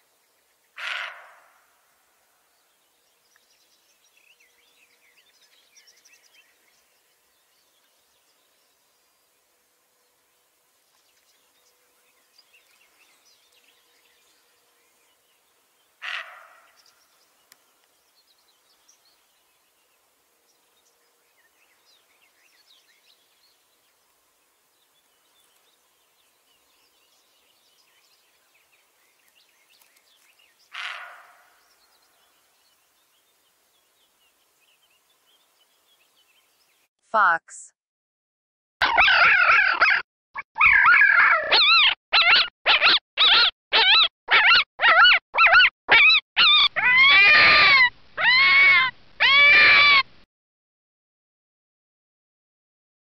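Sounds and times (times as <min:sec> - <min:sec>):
faint birdsong: 0:00.0 - 0:36.9
deer calling: 0:00.8 - 0:01.3, 0:16.0 - 0:16.7, 0:30.7 - 0:31.4.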